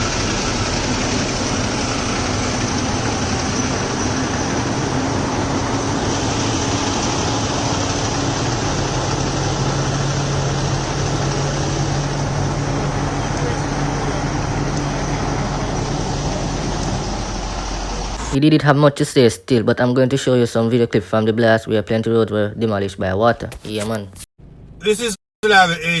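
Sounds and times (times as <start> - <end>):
constant rushing noise: 0.0 - 18.4
low hum: 0.0 - 18.4
vehicle engine running: 0.0 - 18.4.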